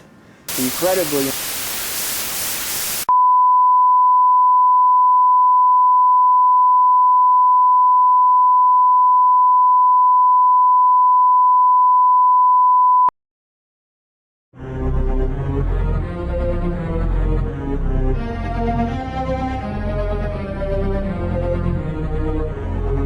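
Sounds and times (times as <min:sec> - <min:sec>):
long electronic beep: 0:03.1 - 0:13.1.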